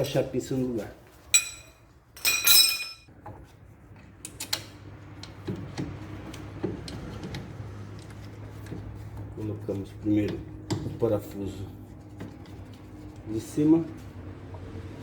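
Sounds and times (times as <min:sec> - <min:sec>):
metal clinks of tools: 0:01.3 - 0:03.1
ringing metal clank: 0:01.4 - 0:03.1.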